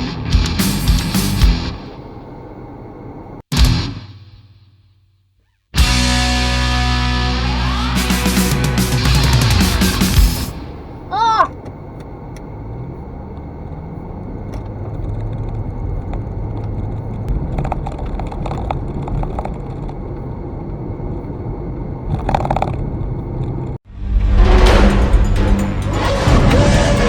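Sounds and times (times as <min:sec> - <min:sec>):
car engine running: 0:07.4 - 0:23.8
light clicks and clatter: 0:11.5 - 0:23.8.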